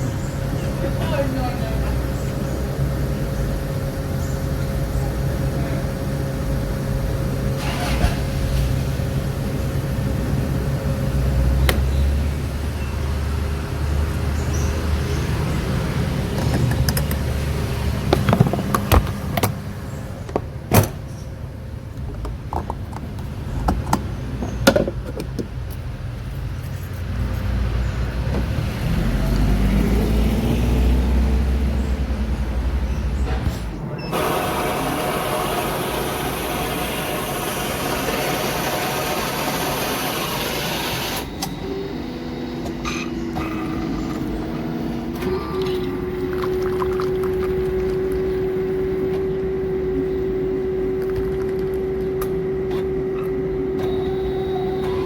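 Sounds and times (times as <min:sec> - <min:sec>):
road noise rumbling: 0:00.0 - 0:55.0
vehicle engine running: 0:00.0 - 0:55.0.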